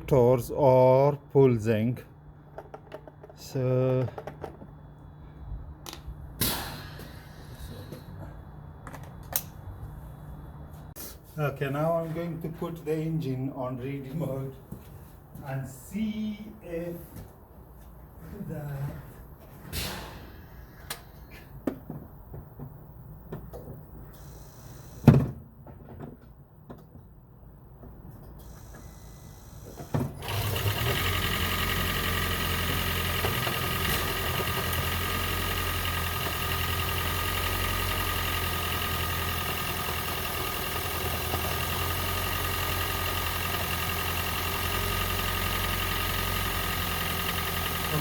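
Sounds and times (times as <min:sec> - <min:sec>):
light handling clicks and knocks: 0:02.5 - 0:04.8
steady low hum: 0:03.2 - 0:25.1.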